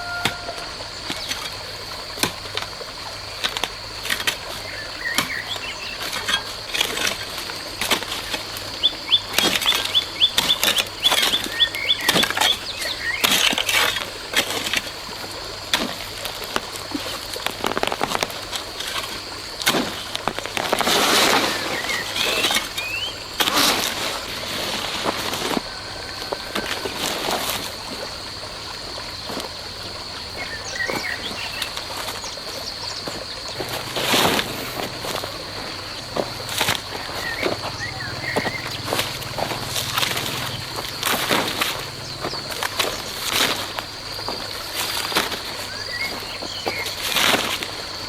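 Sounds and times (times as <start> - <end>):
bird chirps: 4.6 - 6.0, 21.5 - 23.3, 30.4 - 43.2.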